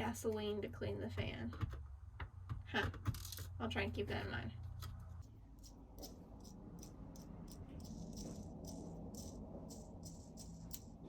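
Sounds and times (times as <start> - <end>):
steady low hum: 3.6 - 11.0.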